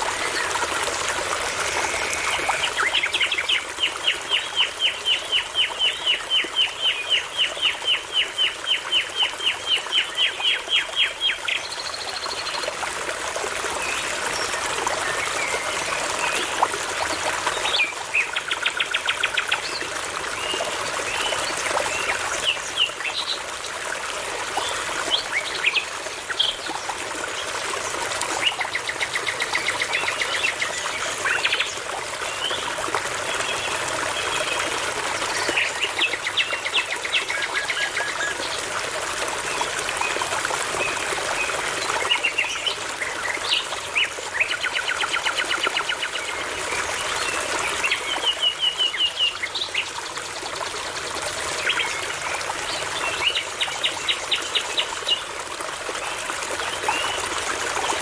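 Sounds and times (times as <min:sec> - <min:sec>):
brook babbling: 0:00.0 - 0:58.0.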